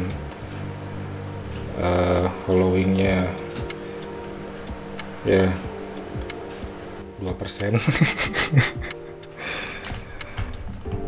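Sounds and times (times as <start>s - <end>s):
background music sustained tones: 0.0s - 11.0s
breathy snuffle: 8.1s - 10.4s.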